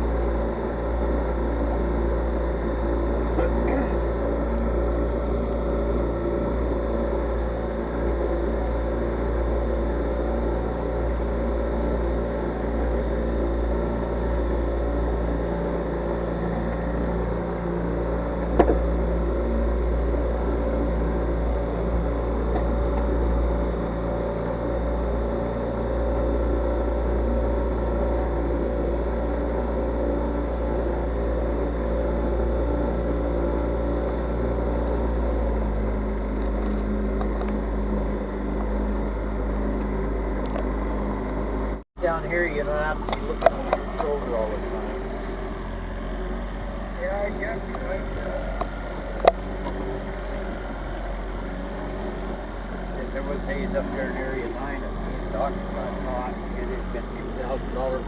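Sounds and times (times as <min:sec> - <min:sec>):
boat engine running: 0:00.0 - 0:58.0.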